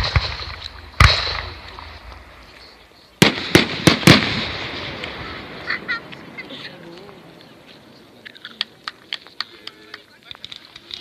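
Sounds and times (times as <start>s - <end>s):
sharp firework cracks: 0.0s - 2.4s, 3.2s - 6.4s
fireworks exploding: 0.0s - 11.0s.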